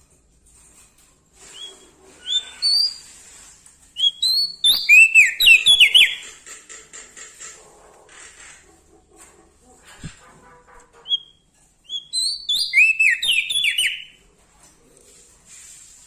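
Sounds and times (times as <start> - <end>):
bird singing whistled notes: 1.5 - 3.0, 4.0 - 6.2, 11.1 - 14.2.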